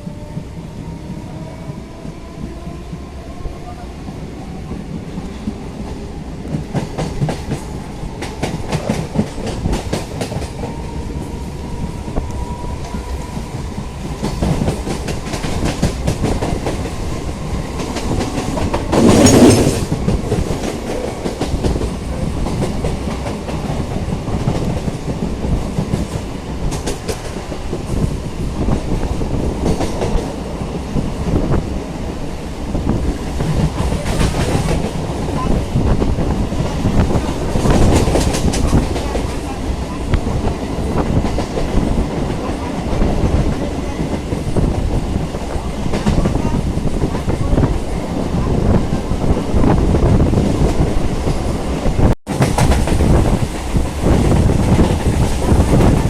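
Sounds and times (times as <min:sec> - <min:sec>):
train wheels clicking over rail joints: 0:12.8 - 0:30.4, 0:33.0 - 0:39.5, 0:52.3 - 0:56.0.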